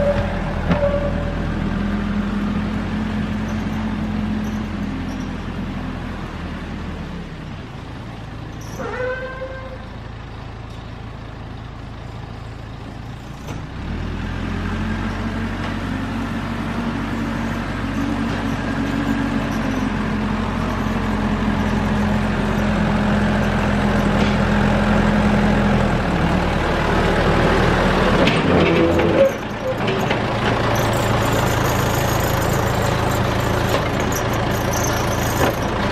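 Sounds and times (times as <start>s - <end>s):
high squeal: 0.0s - 1.6s, 3.3s - 5.4s, 8.6s - 10.0s, 17.0s - 24.3s, 28.5s - 35.9s
diesel engine revving: 0.0s - 7.5s, 12.7s - 35.9s.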